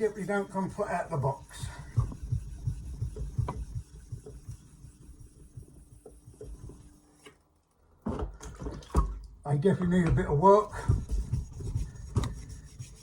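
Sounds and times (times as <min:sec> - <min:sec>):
whetstones knocking on hard surface: 0:01.7 - 0:04.7.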